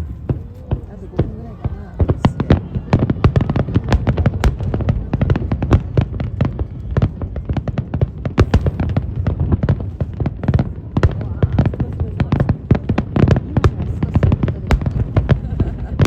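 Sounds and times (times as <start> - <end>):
fireworks bangs and crackles: 0.0 - 16.0
low rumble of booms: 0.0 - 16.0.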